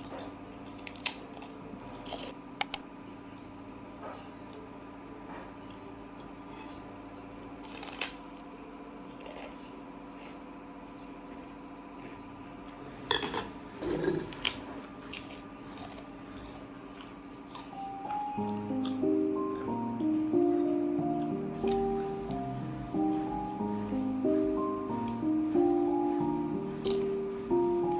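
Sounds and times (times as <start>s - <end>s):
steady low hum: 0.0s - 27.9s
light music: 17.4s - 27.9s.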